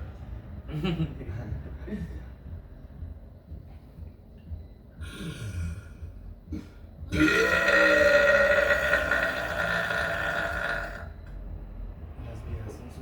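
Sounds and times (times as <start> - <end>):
person burping: 6.5 - 11.2.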